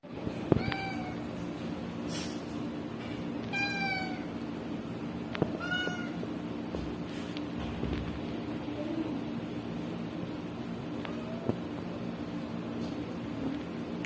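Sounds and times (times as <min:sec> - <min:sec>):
cat meowing: 0:00.5 - 0:01.2, 0:03.5 - 0:04.3, 0:05.6 - 0:06.2.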